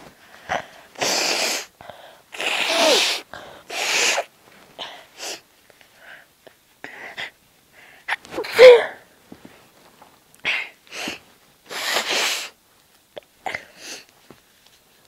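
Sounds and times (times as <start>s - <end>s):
breathy breathing: 1.8s - 2.3s, 3.3s - 3.8s, 4.8s - 8.2s
woman's stifled sneeze: 2.4s - 4.3s, 8.1s - 9.0s.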